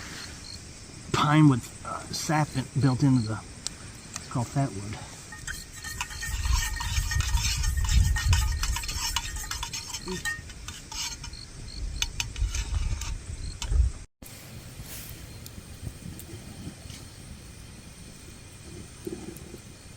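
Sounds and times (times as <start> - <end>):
wood fire crackling and popping: 14.2 - 19.9.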